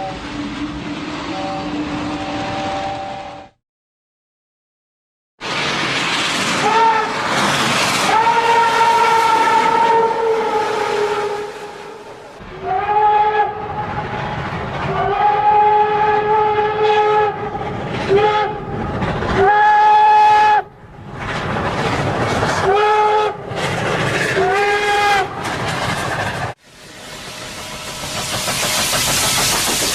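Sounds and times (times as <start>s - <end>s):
moving train rumble: 0.0s - 3.6s, 5.4s - 29.9s
train whistle blasts: 0.0s - 3.6s, 6.6s - 7.2s, 8.0s - 13.9s, 14.9s - 17.5s, 19.4s - 20.7s, 24.4s - 25.3s.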